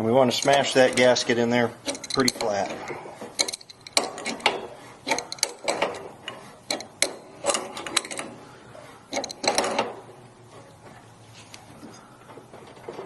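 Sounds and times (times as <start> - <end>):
metal wrench clicking and clattering: 0.3 - 1.2, 1.8 - 2.7, 3.3 - 8.3, 9.1 - 9.9.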